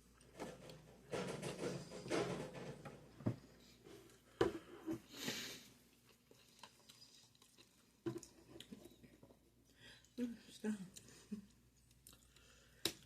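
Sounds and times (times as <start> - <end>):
person sniffing: 4.7 - 5.8
person chewing food: 5.8 - 9.0, 10.9 - 13.0.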